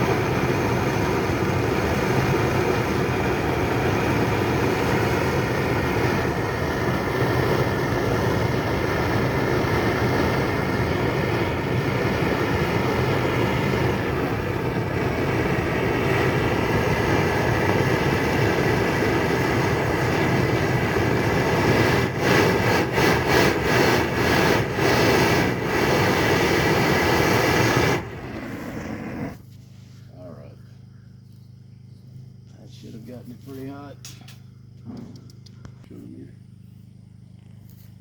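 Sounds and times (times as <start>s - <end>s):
heating tool roaring: 0.0s - 29.6s.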